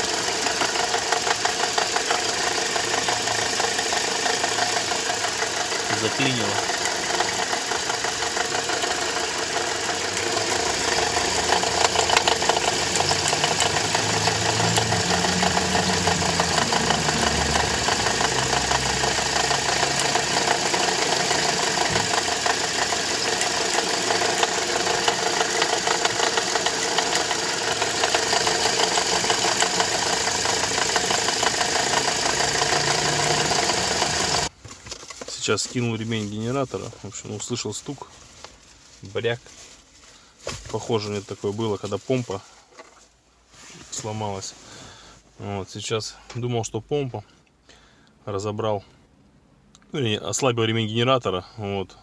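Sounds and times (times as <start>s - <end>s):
car engine running: 0.0s - 34.5s
pulley knocking clatter: 0.0s - 35.4s.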